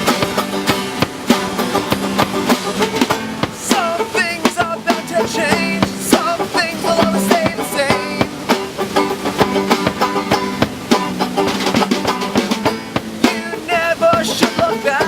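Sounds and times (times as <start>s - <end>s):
banjo: 0.0s - 15.0s
steady drum beat: 0.0s - 15.0s
strummed acoustic guitar: 0.0s - 15.0s.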